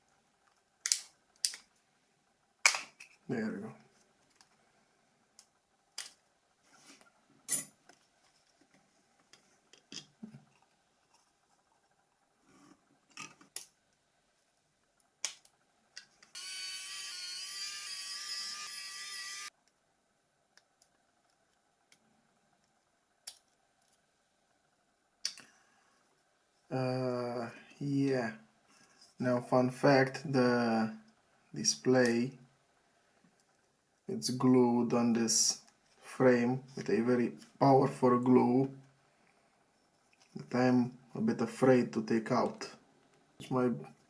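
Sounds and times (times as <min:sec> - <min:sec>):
small electric motor whine: 0:16.3 - 0:19.5.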